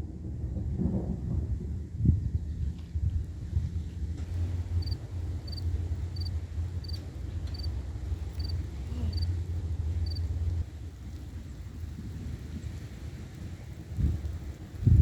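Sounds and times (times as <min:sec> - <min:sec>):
low rumble: 0:00.5 - 0:11.2
cricket chirping: 0:04.8 - 0:07.7, 0:08.3 - 0:09.3, 0:10.0 - 0:10.3.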